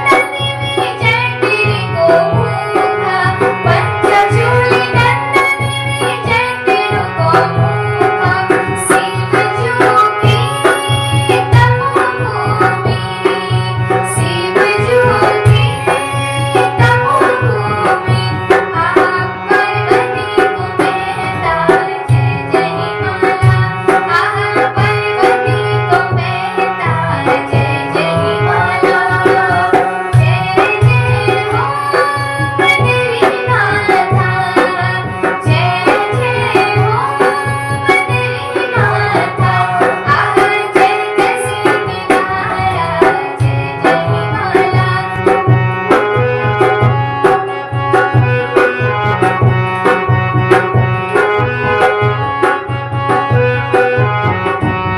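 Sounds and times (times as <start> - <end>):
devotional music melody: 0.0 - 54.9
tabla playing a rhythm: 0.0 - 54.9.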